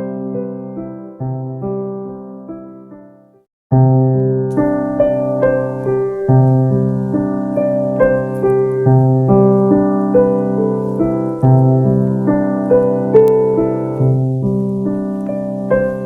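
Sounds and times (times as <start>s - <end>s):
slow gentle piano music: 0.0s - 16.0s.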